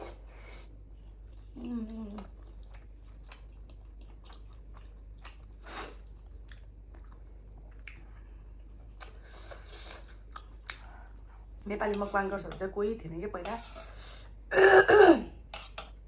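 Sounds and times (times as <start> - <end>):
person chewing food: 0.0 - 12.1, 15.5 - 16.0.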